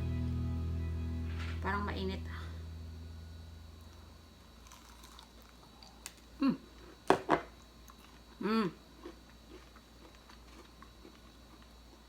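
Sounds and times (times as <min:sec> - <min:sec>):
crunchy food being chewed: 0:04.6 - 0:12.0.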